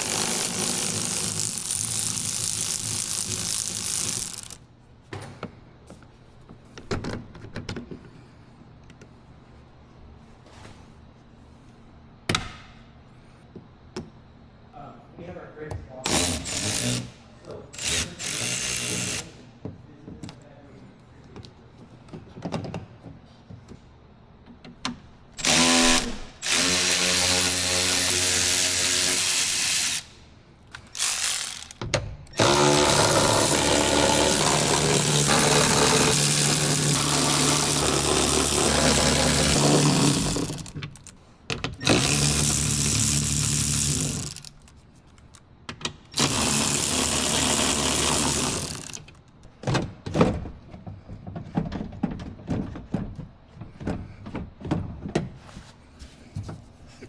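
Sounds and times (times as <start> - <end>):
power drill whirring: 0.0 - 4.6, 16.0 - 17.2, 17.8 - 19.4, 25.4 - 30.2, 30.8 - 41.1, 41.8 - 44.6, 46.2 - 49.1.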